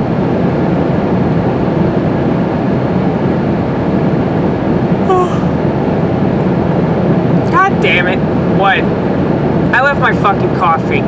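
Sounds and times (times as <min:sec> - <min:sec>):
car cabin road and engine rumble: 0:04.9 - 0:11.0.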